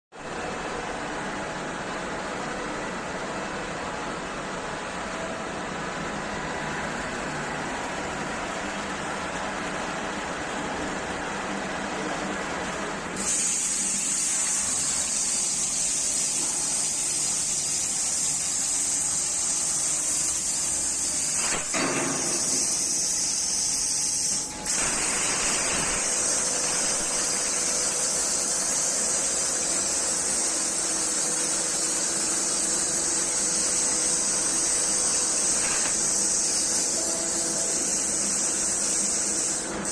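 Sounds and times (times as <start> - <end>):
plasma torch high hiss: 13.2 - 39.9
steady machine noise: 13.2 - 39.9.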